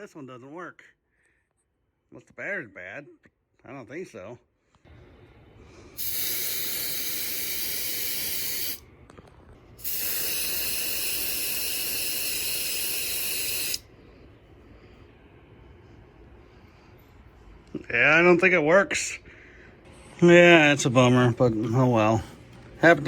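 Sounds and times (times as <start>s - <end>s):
aerosol spray hissing: 6.0s - 8.8s, 9.8s - 13.9s.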